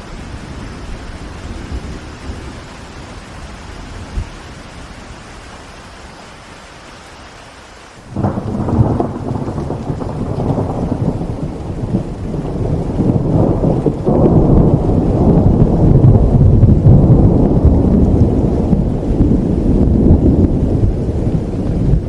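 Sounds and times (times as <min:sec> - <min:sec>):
steady rain hiss: 0:00.0 - 0:22.0
thunder rumbling: 0:08.1 - 0:22.0.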